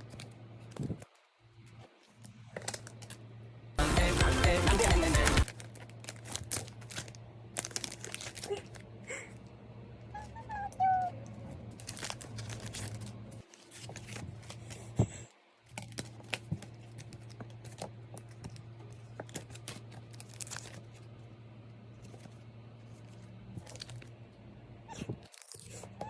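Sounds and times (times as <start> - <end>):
packaging crinkling and tearing: 0.0 - 3.2, 4.8 - 8.9, 11.6 - 14.9, 15.7 - 21.0, 23.6 - 24.1, 25.2 - 25.8.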